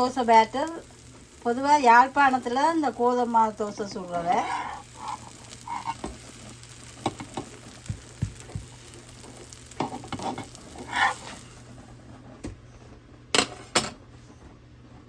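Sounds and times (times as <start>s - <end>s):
batter sizzling on a pan: 0.0s - 12.9s.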